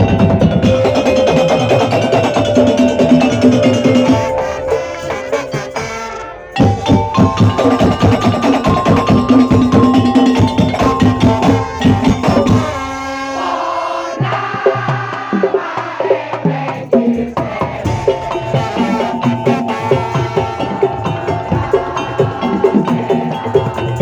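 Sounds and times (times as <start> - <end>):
melody over a beat: 0.0 - 13.1
wooden percussion and drums: 0.0 - 24.0.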